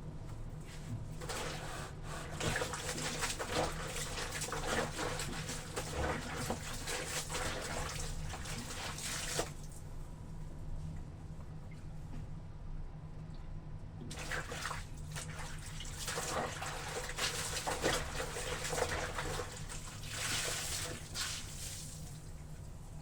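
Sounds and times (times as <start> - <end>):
wet laundry sloshing underfoot: 0.7 - 10.0, 14.1 - 22.6.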